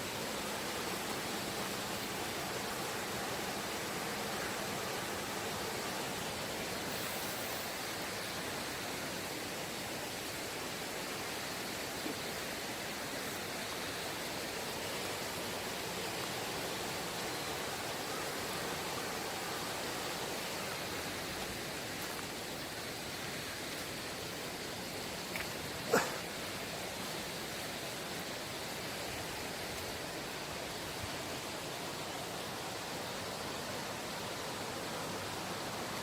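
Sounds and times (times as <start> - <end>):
stream rushing over rocks: 0.0 - 36.0.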